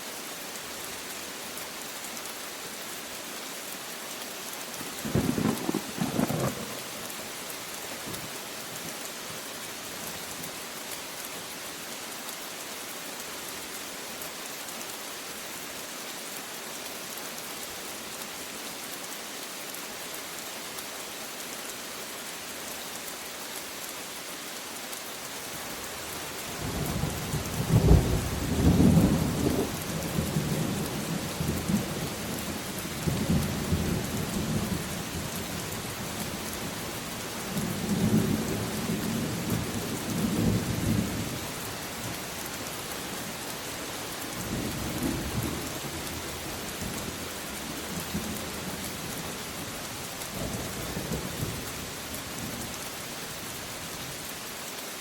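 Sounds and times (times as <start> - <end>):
rain hiss: 0.0 - 55.0
thunder crack and rumbling: 5.1 - 6.8.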